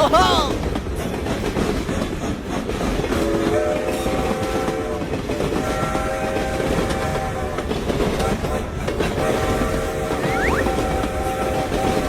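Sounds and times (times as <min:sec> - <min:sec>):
train rumble and clatter: 0:00.0 - 0:12.0
train horn chord: 0:05.6 - 0:12.0.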